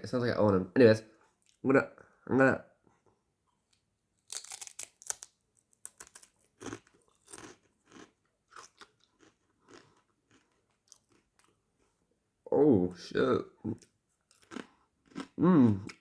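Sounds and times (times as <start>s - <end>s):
tortilla chip crunching: 4.2s - 11.6s
crunchy chewing: 4.3s - 11.6s, 13.7s - 16.0s.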